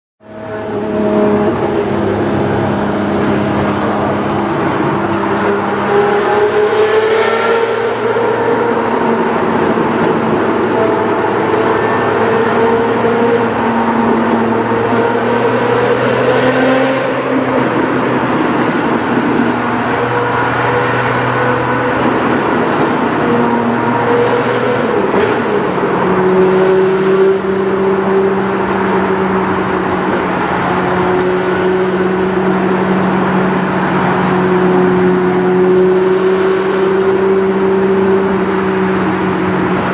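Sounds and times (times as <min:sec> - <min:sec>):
car engine accelerating: 0:00.2 - 0:39.9.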